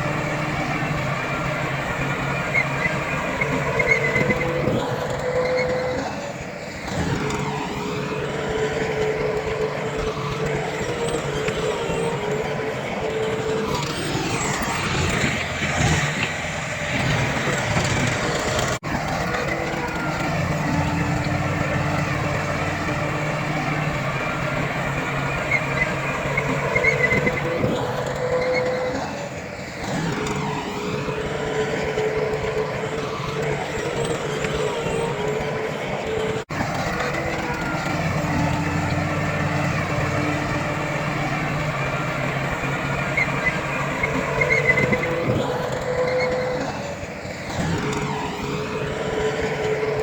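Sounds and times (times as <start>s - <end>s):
heavy machinery diesel engines: 0.0s - 50.0s.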